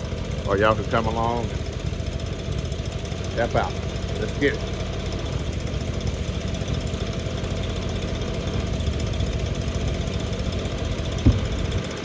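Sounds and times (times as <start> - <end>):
lawn mower engine running: 0.0 - 12.0
short knock: 11.2 - 11.8.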